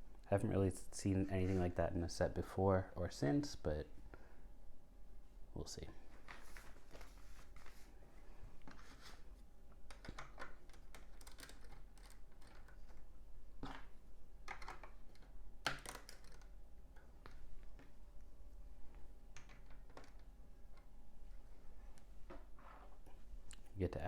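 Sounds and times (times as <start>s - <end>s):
plastic bricks clicking and rattling: 13.6s - 16.5s.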